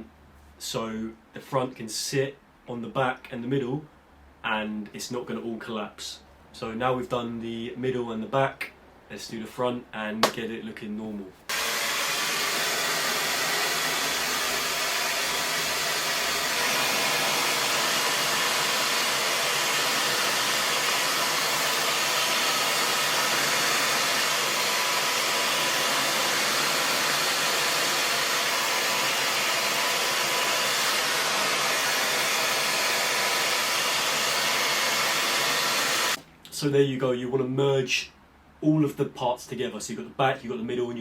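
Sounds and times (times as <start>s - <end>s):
hair dryer blowing air: 11.5s - 36.2s.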